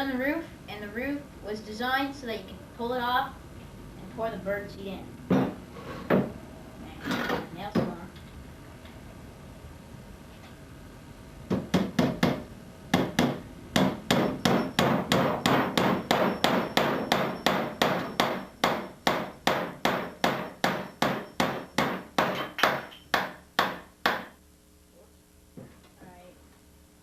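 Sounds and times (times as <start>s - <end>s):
hammer driving nails into wood: 13.0s - 24.3s.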